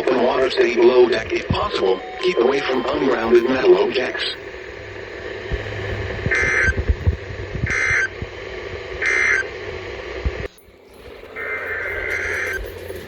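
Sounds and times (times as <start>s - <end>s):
radio hiss: 0.0s - 13.0s
warbling digital bursts: 1.6s - 8.1s.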